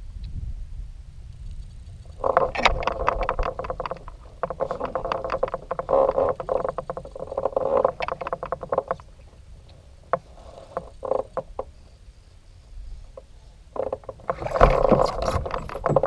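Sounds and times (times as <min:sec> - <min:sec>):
frogs croaking: 0:02.1 - 0:11.9.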